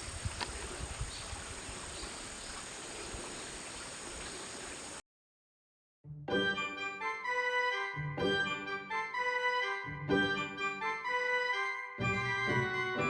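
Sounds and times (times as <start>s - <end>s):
insects chirring: 0.0s - 5.0s.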